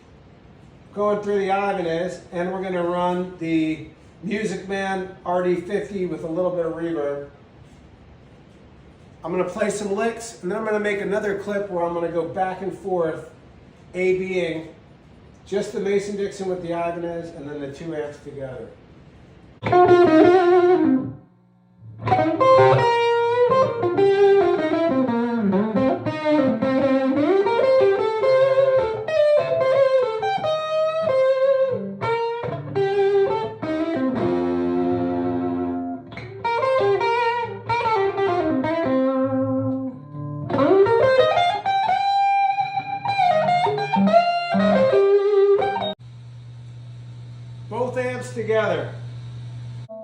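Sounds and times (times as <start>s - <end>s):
electric guitar lead licks: 19.6s - 46.0s.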